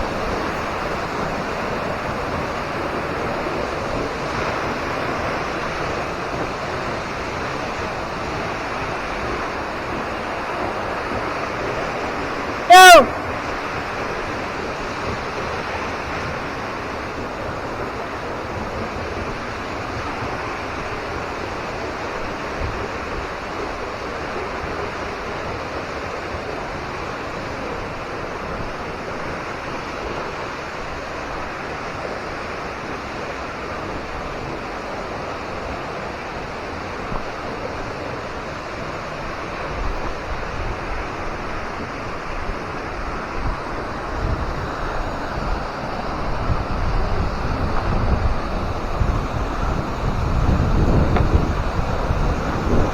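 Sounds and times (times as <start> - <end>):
waterfall rushing: 0.0 - 52.9
wind buffeting microphone: 0.0 - 52.9.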